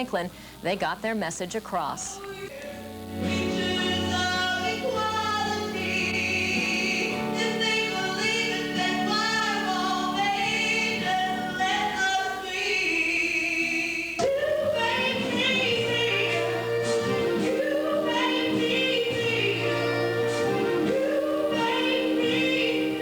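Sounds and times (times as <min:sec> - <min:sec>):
women singing pop song: 0:01.7 - 0:23.0
band accompaniment: 0:14.9 - 0:23.0.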